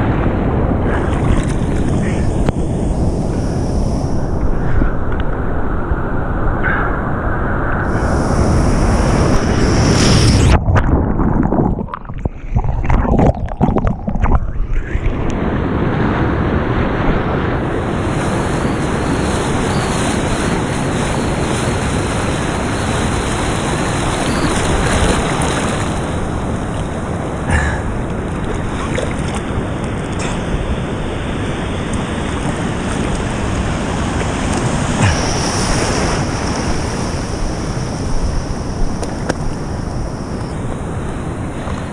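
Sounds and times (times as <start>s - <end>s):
ocean surf and rushing water: 0.0s - 41.9s
wind buffeting microphone: 0.0s - 41.9s.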